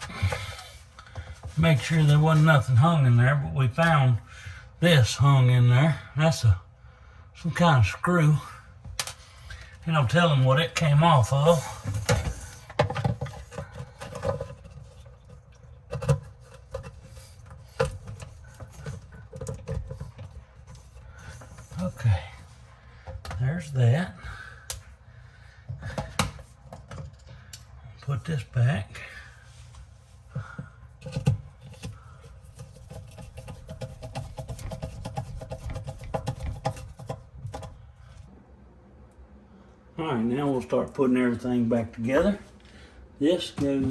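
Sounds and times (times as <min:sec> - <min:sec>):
plastic parts clicking and knocking: 0:08.9 - 0:09.2, 0:11.8 - 0:22.0, 0:25.7 - 0:27.7, 0:30.4 - 0:37.8
hard objects clicking and tapping: 0:30.4 - 0:37.8.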